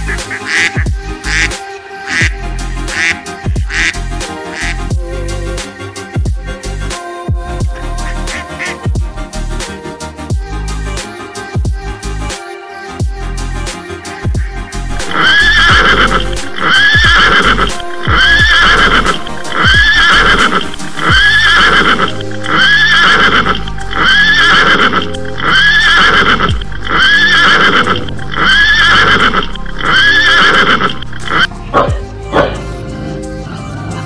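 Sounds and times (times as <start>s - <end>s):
background music with low beat: 0.0s - 12.4s, 13.0s - 34.0s
horse whinny: 15.0s - 31.5s.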